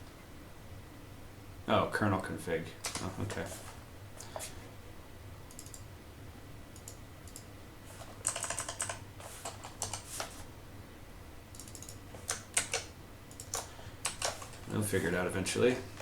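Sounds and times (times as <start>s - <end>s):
computer keyboard typing: 2.8s - 3.1s, 5.5s - 5.9s, 6.8s - 7.5s, 8.1s - 10.3s, 11.5s - 14.7s.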